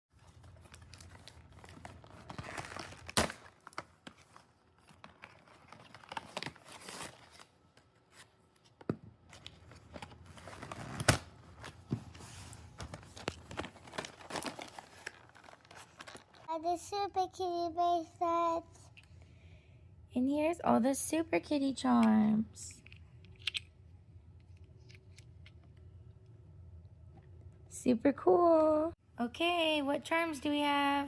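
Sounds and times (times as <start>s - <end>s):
toy packaging tearing and crinkling: 0.3s - 7.6s, 12.8s - 16.5s.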